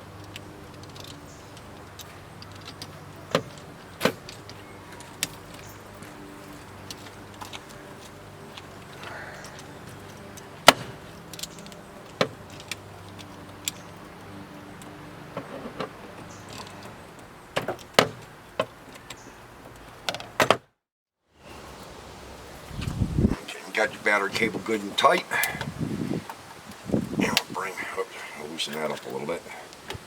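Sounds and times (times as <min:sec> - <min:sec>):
wrench clinking on bolts: 0:00.1 - 0:20.3.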